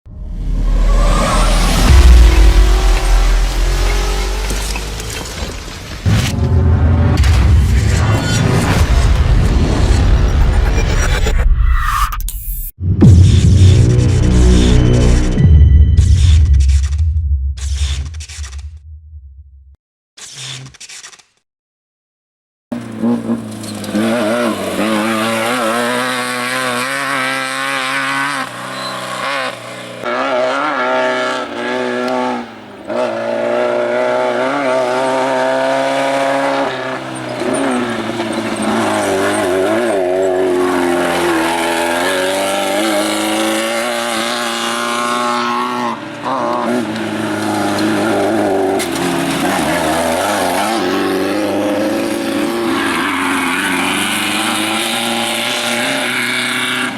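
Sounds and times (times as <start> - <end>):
race engines revving: 0.3 - 6.1, 22.7 - 56.9.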